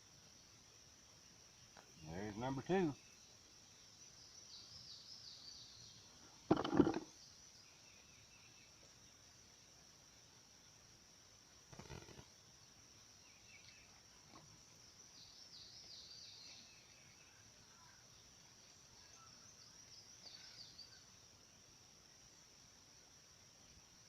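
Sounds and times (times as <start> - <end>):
insects trilling: 0.0 - 24.0
birds chirping: 1.6 - 8.8.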